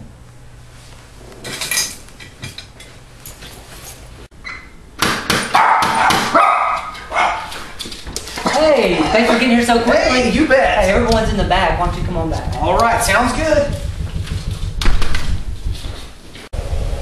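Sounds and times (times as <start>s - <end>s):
dog barking: 5.5s - 7.6s.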